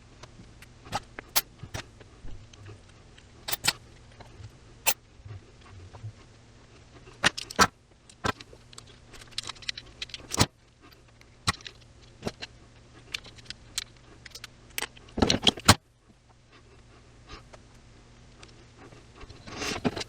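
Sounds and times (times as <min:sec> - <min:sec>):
wire clicking and jingling: 0:03.5 - 0:03.8.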